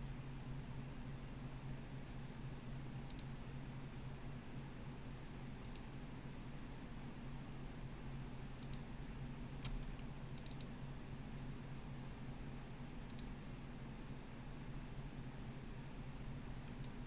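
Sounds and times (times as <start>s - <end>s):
computer mouse clicks: 3.1s - 3.3s, 5.6s - 5.9s, 8.6s - 8.9s, 9.6s - 10.7s, 13.1s - 13.3s, 16.6s - 17.0s.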